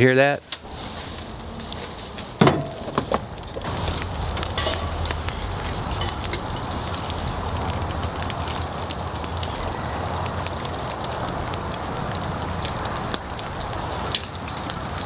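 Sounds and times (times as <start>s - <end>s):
wood fire crackling and hissing: 0.0s - 15.0s
sharp knocks: 2.4s - 3.7s.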